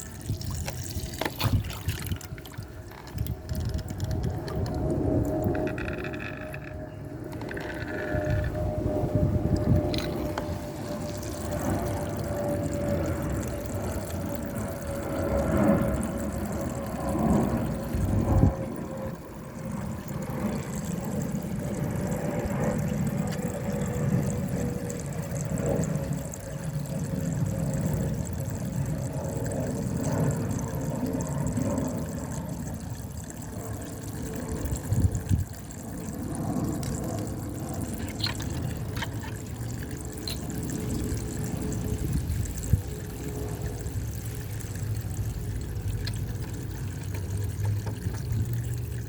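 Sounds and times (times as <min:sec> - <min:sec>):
water swirling and splashing: 0:00.0 - 0:06.8, 0:07.4 - 0:49.0
steady low pump hum: 0:00.0 - 0:49.0.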